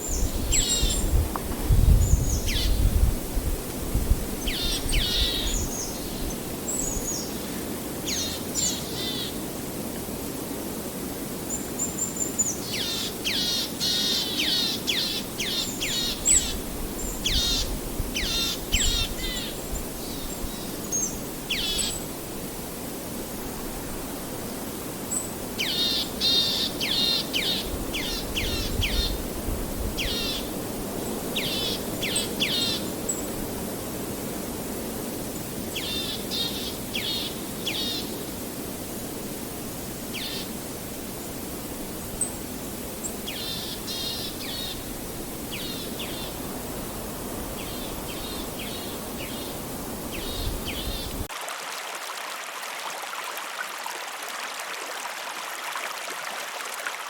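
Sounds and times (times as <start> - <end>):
songbird singing: 0.0 - 3.0, 4.3 - 9.4, 11.5 - 22.1, 25.1 - 29.3, 30.0 - 33.4, 35.7 - 38.4, 40.1 - 40.6, 42.0 - 51.3
running river water: 0.0 - 57.0.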